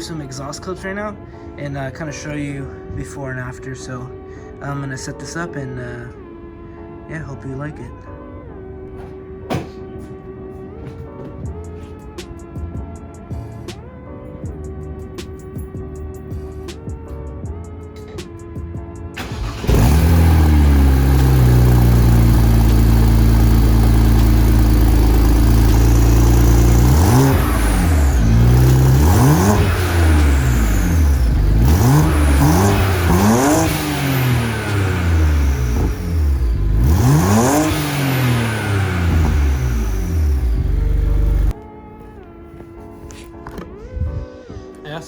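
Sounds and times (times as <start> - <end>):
car engine starting and revving: 19.2 - 41.6.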